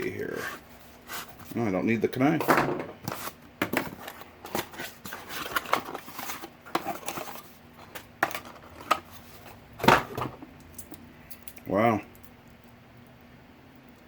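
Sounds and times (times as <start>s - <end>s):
packaging rustling and clicking: 3.1s - 10.2s.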